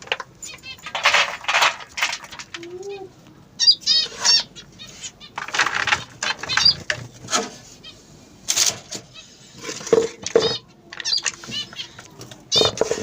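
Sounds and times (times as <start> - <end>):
high bird chirps: 3.6 - 5.4, 10.4 - 12.7.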